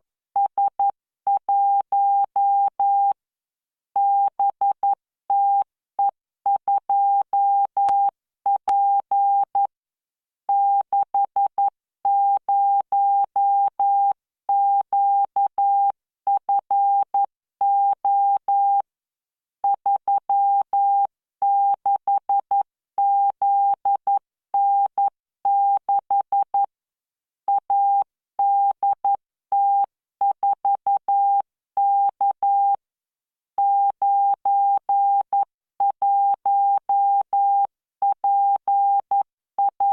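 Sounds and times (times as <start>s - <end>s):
morse code beeps: 38.8s - 39.9s.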